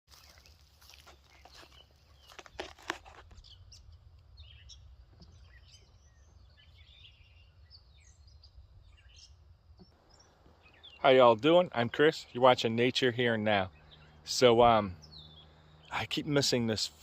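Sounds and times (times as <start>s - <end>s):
high bird chirps: 3.4s - 16.2s.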